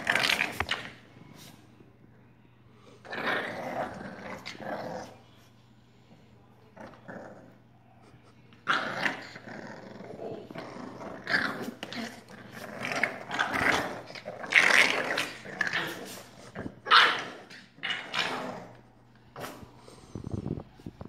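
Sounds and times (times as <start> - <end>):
puppies growling: 0.0 - 1.0, 3.0 - 5.3, 6.7 - 7.8, 8.6 - 21.0.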